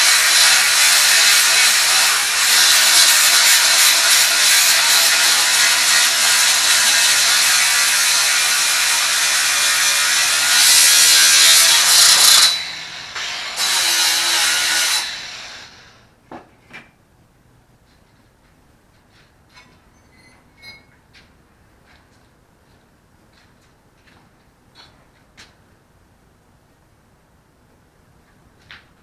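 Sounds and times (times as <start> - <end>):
angle grinder grinding: 0.0 - 15.9.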